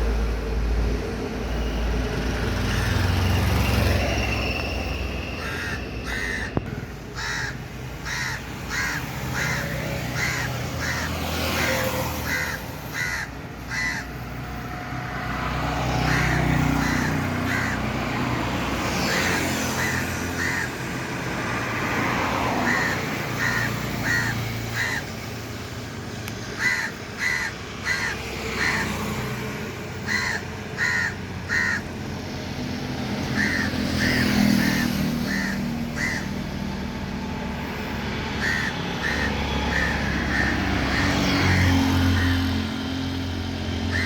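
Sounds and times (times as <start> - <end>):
road traffic rumble: 0.0 - 44.0
vehicles passing: 0.0 - 44.0
crow cawing: 5.4 - 14.6, 15.4 - 25.5, 26.5 - 32.0, 33.2 - 36.6, 38.3 - 44.0.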